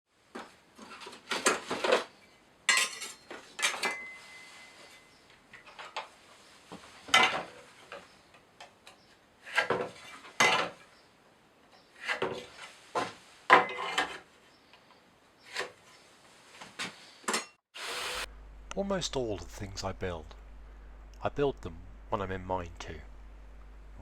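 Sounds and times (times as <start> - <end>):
brief ringing tone: 3.9 - 5.2.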